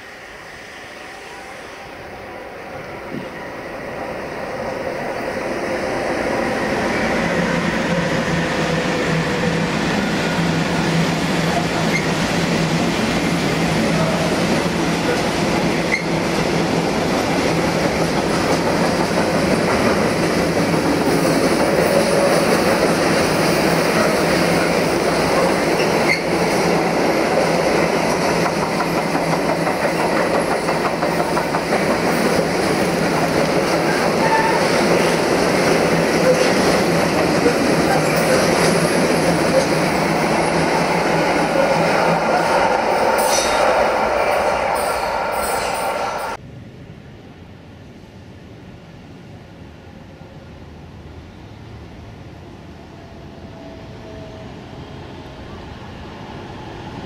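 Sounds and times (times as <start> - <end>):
freight train wheels clattering: 17.5 - 46.4.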